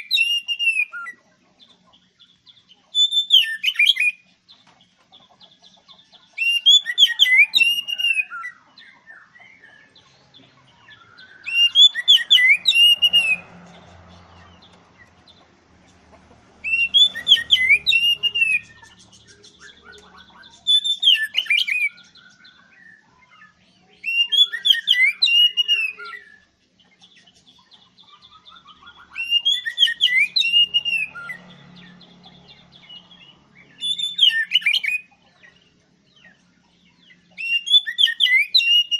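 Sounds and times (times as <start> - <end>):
bird singing whistled phrases: 0.0 - 1.2, 2.9 - 4.2, 6.4 - 9.9, 10.9 - 13.4, 16.6 - 26.5, 28.0 - 31.4, 33.7 - 35.1, 37.4 - 38.9.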